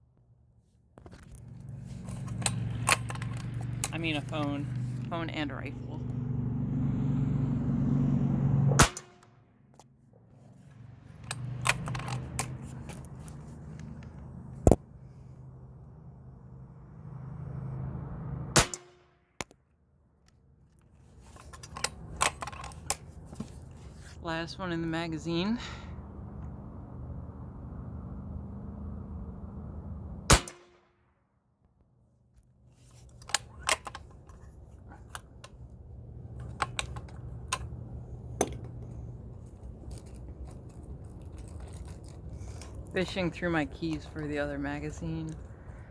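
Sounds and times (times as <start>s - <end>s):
low handling rumble: 0.0s - 8.8s, 20.8s - 30.3s, 32.6s - 45.9s
keys and gear rattling: 1.2s - 5.0s, 11.2s - 13.8s, 21.1s - 24.1s, 36.2s - 45.6s
metallic clicks of rifle action: 1.3s - 4.4s, 11.2s - 13.2s, 21.3s - 23.1s, 32.9s - 34.4s, 36.4s - 37.8s
air rifle shot: 8.8s - 9.2s, 18.6s - 18.9s, 30.3s - 30.8s.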